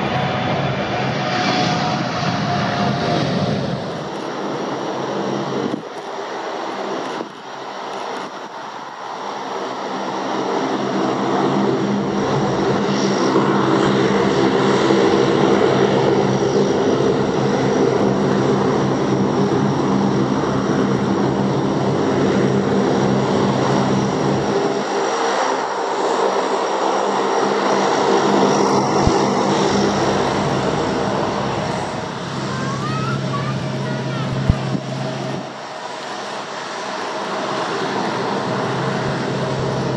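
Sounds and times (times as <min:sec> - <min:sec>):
turboprop engines droning: 0:00.0 - 0:39.9.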